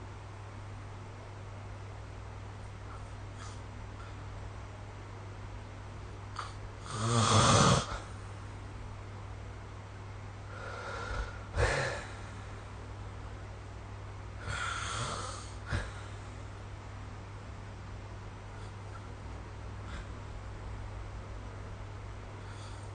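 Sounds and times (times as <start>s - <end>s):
steady low hum: 0.0s - 22.9s
person snoring: 6.4s - 8.1s, 10.5s - 12.3s, 14.4s - 16.1s.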